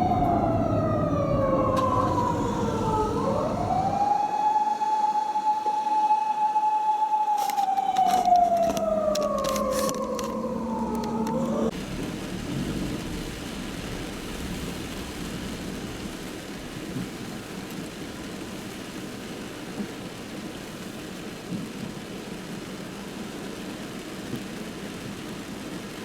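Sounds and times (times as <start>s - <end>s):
car road noise rumbling: 0.0s - 4.4s, 7.4s - 23.2s.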